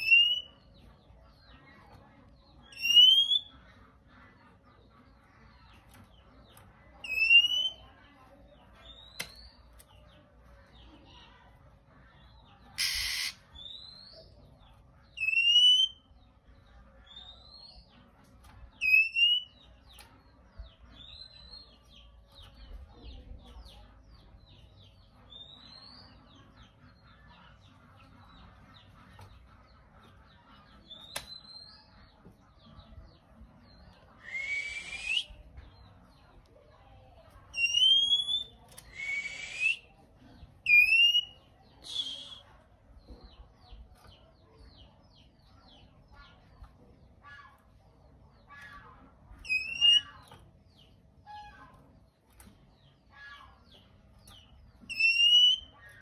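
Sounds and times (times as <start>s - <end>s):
bird harsh rasping calls: 2.6s - 4.1s, 7.0s - 7.8s, 12.7s - 14.2s, 15.1s - 16.1s, 37.5s - 39.9s, 49.4s - 50.3s, 54.2s - 56.0s
bird rising whistles: 34.2s - 35.3s.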